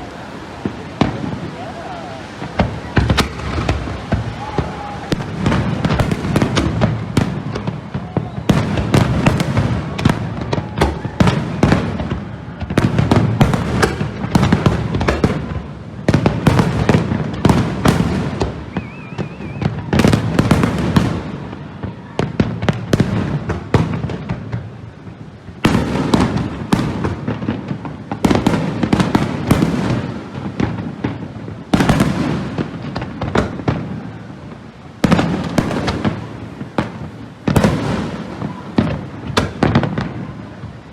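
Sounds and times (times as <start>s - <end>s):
fireworks bangs and crackling: 0.0s - 40.9s.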